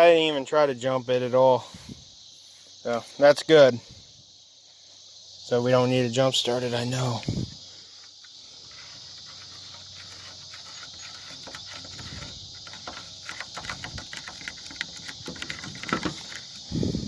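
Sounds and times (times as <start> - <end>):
crickets shrilling: 0.0 - 17.0
light clicks and scraping: 7.9 - 16.7.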